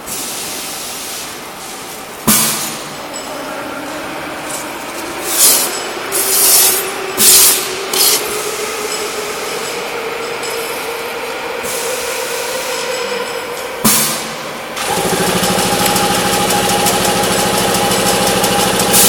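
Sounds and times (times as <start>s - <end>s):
loud bursts of hissing: 0.0s - 3.3s
milling machine spindle whine: 2.7s - 19.0s.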